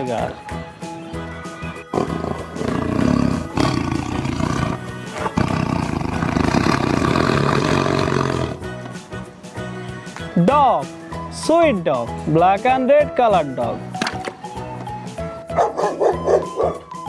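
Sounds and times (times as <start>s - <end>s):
background music: 0.0s - 17.0s
tiger roaring: 1.9s - 8.6s, 15.6s - 16.9s.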